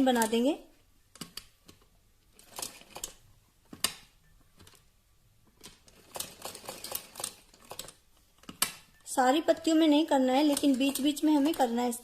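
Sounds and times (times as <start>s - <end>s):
sewing machine clicking: 2.4s - 3.2s, 5.6s - 8.8s, 10.3s - 11.8s.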